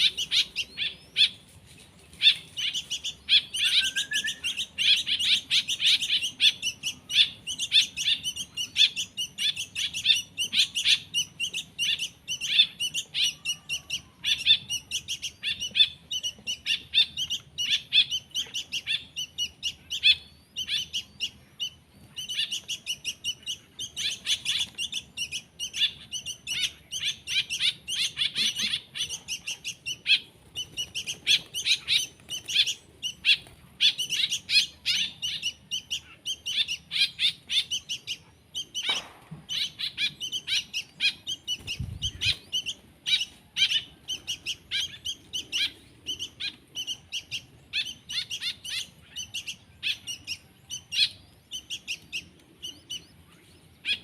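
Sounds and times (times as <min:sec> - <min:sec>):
songbird chicks chirping: 0:00.0 - 0:54.0.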